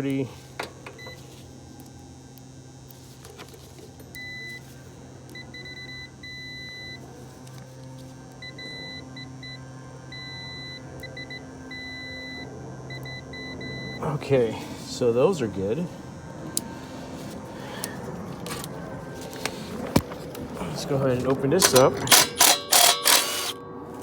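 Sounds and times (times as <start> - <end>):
multimeter continuity beeps: 0.0 - 3.2, 4.0 - 7.1, 8.3 - 17.1, 21.5 - 23.6
low hum: 6.3 - 24.0.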